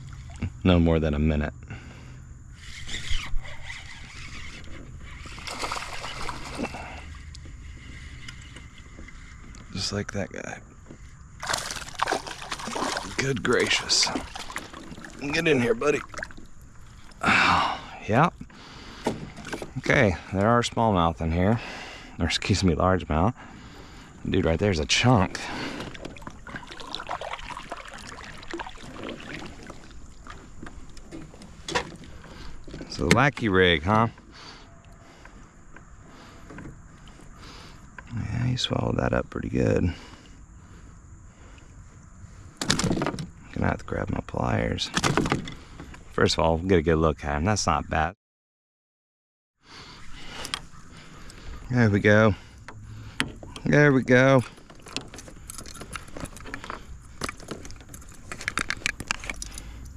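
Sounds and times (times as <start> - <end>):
creek water splashing: 0.0 - 0.6, 2.6 - 10.0, 11.3 - 17.9, 24.7 - 33.0.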